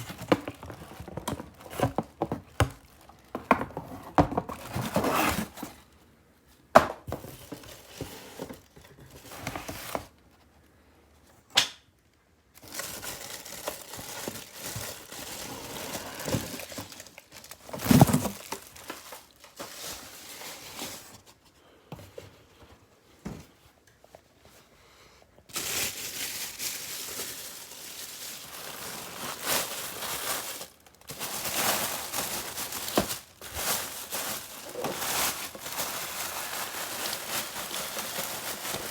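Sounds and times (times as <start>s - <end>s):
packaging crinkling and tearing: 12.5s - 21.2s, 25.5s - 38.9s.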